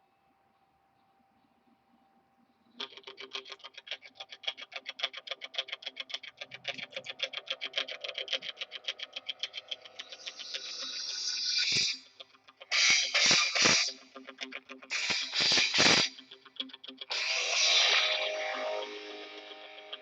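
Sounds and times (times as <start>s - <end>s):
guitar-like tone: 12.7s - 20.0s.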